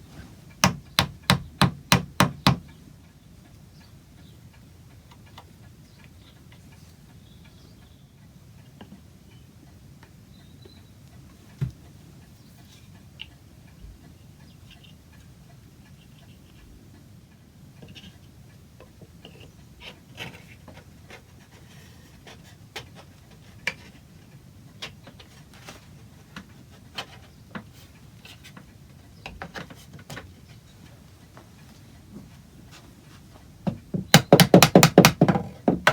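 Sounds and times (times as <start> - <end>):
wood and tools knocking: 0.6 - 2.7, 33.6 - 35.9.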